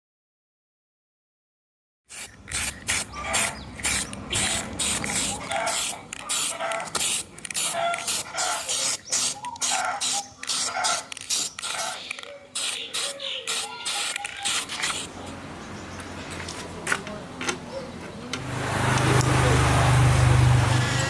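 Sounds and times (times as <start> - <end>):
short bursts of spraying hiss: 2.1 - 15.1.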